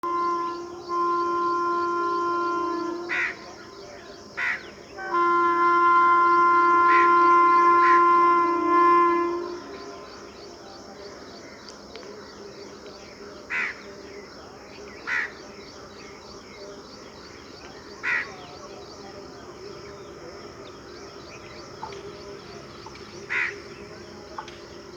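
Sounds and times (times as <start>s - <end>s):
locomotive horn blasts: 0.0s - 3.8s, 4.9s - 10.3s.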